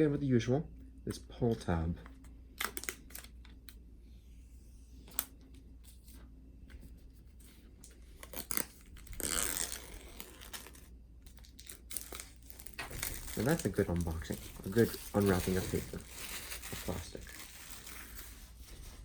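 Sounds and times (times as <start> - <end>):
paper clicks and rustles: 7.4 - 19.0
paper tearing: 8.2 - 10.9, 11.8 - 19.0.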